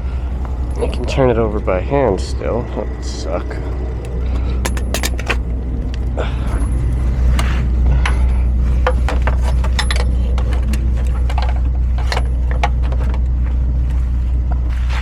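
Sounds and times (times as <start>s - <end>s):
steady low hum: 0.0s - 15.0s
metal tool clicking and rattling: 4.0s - 7.5s, 8.8s - 13.2s.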